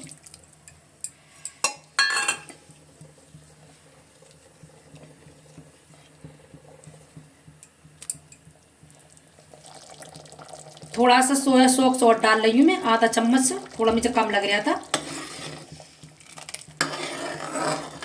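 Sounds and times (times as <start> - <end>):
faint stirring: 0.6 - 9.9, 10.8 - 18.0
metal spoon knocking on pot: 1.7 - 2.5.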